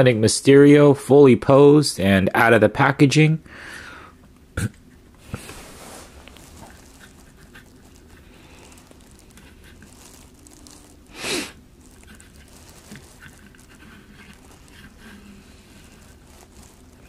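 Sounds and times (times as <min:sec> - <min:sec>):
breathy sniff or exhale: 0:03.5 - 0:04.2, 0:11.1 - 0:11.6.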